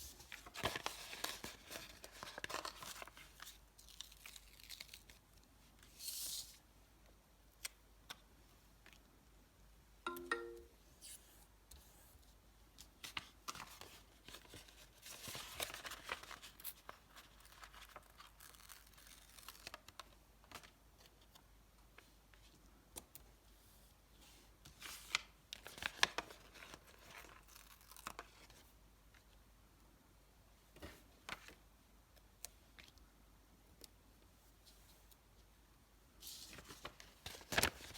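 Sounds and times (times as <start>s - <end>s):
paper rustling: 0.1s - 5.0s, 13.0s - 20.7s, 36.3s - 37.9s.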